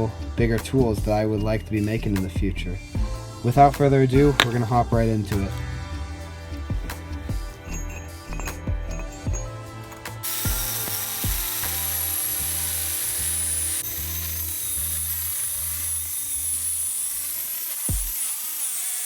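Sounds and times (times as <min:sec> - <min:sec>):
background music with bass beat: 0:00.0 - 0:12.6
power tool grinding steel: 0:04.2 - 0:05.7, 0:06.9 - 0:19.0.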